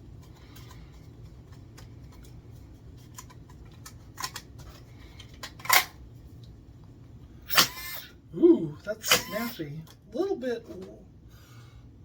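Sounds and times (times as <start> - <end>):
dart blaster burst: 7.5 - 8.1.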